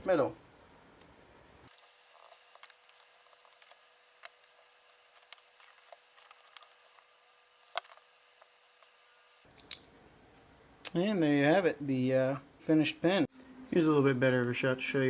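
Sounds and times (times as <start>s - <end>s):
small metal parts clicking: 2.1s - 8.1s.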